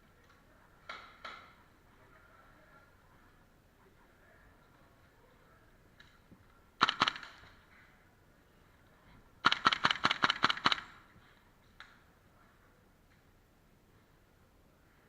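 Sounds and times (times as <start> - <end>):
airsoft gun shots: 6.8 - 7.5, 9.4 - 11.0.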